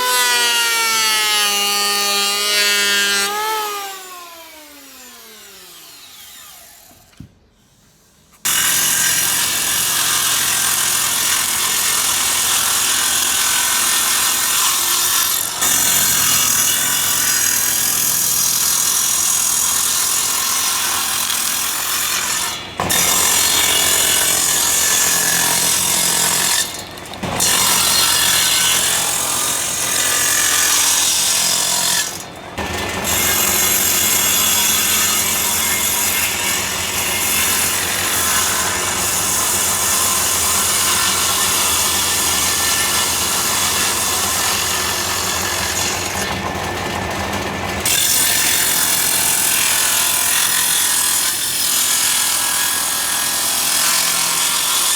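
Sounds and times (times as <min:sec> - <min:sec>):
power tool whirring on wood: 0:00.0 - 0:54.9
power tool motor winding down: 0:00.3 - 0:07.1.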